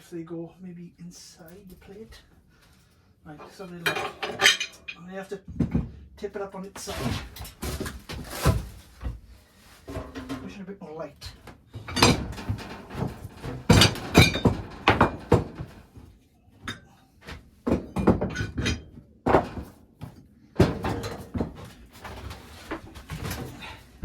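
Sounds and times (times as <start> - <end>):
thunks and knocks on stove: 11.8 - 16.1, 17.3 - 23.7.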